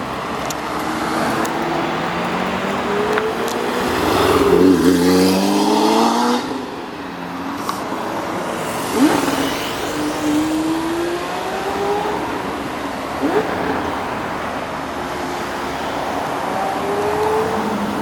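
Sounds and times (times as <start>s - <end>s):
sports car exhausts revving: 1.2s - 6.6s.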